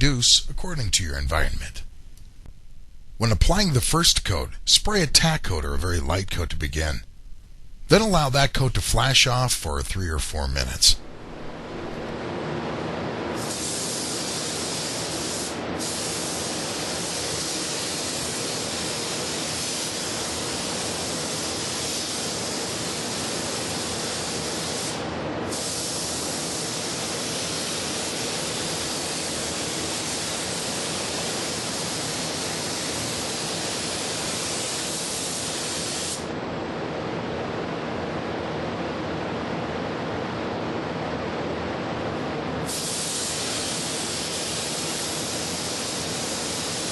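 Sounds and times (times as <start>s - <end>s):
steady rushing noise: 3.6s - 13.3s
air spray gun hissing: 13.4s - 36.3s, 42.6s - 46.9s.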